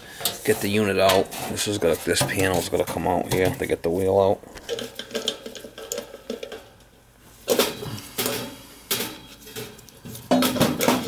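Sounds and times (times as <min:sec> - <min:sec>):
sheet metal clattering and scraping: 0:00.2 - 0:03.8, 0:07.5 - 0:11.0.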